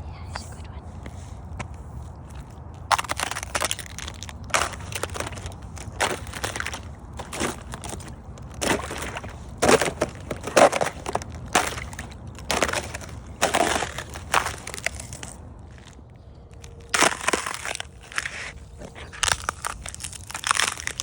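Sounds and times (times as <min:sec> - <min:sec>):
ice crunching underfoot: 0:01.5 - 0:21.0.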